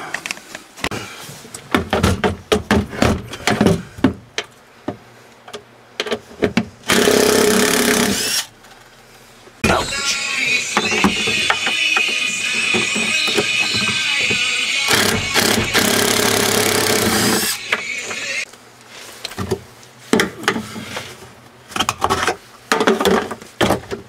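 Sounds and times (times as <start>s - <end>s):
power tool running: 6.9s - 8.5s, 10.8s - 17.7s.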